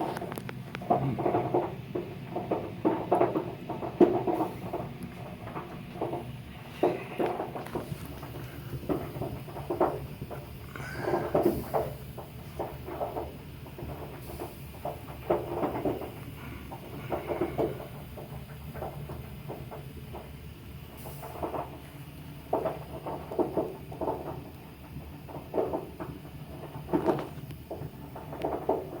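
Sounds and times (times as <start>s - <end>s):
steady low hum: 3.3s - 29.0s
water heater tank popping: 22.5s - 29.0s.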